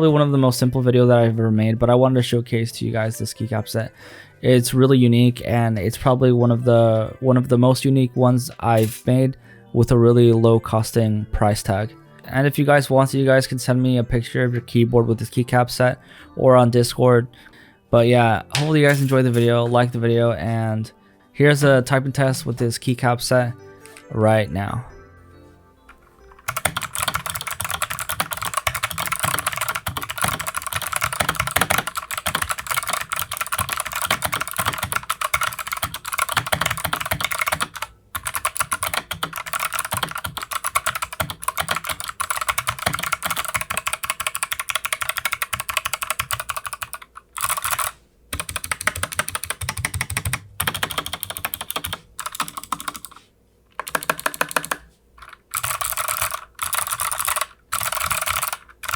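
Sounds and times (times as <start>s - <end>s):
fast typing on mechanical keyboard: 26.4s - 53.2s, 53.8s - 58.9s.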